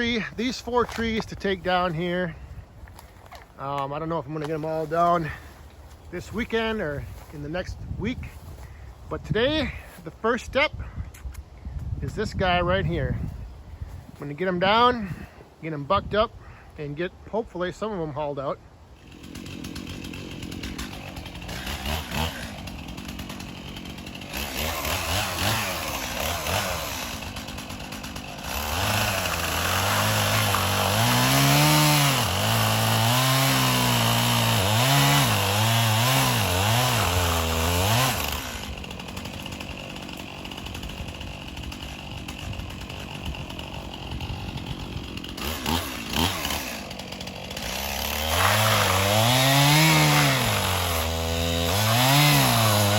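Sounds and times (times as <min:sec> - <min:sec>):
chainsaw cutting wood: 0:00.0 - 0:10.6, 0:19.0 - 0:52.9.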